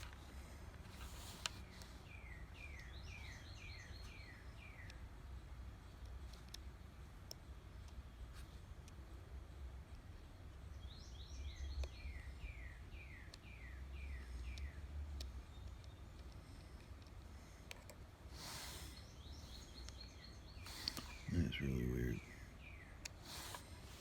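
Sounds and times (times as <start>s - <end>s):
low steady hum: 0.0s - 24.0s
burst of hiss: 18.3s - 19.0s, 23.2s - 24.0s.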